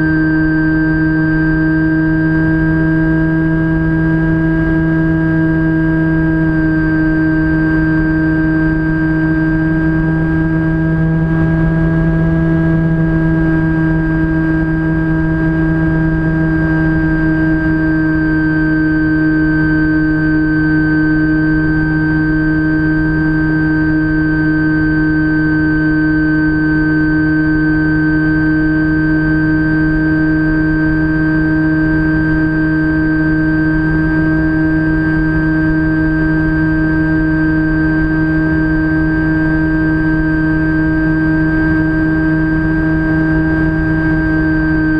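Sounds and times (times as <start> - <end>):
electric motor and propeller hum: 0.0 - 44.9
low rough rumble: 9.6 - 16.0.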